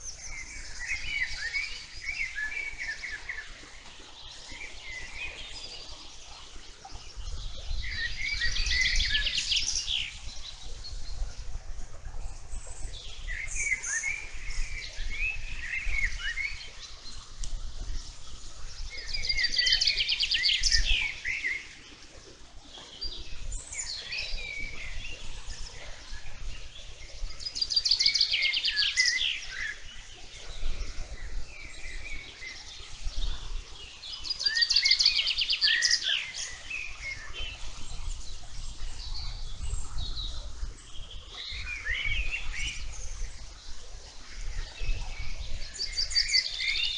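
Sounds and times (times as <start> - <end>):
bird trilled song: 26.8 - 29.9, 34.1 - 40.4.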